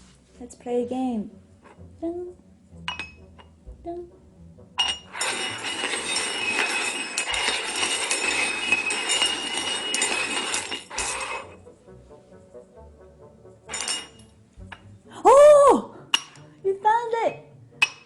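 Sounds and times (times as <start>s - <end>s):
cups clattering on hard surface: 2.9s - 3.5s, 4.8s - 11.6s, 13.7s - 14.9s, 16.2s - 16.4s, 17.8s - 18.0s.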